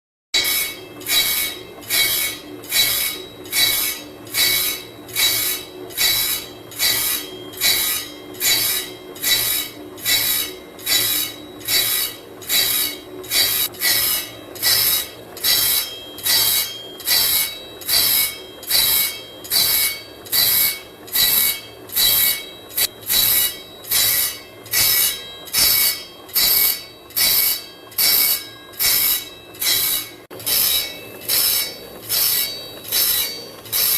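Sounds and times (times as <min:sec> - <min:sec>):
grinder rasping saw teeth: 0:00.4 - 0:33.9
motor hum: 0:00.4 - 0:33.9.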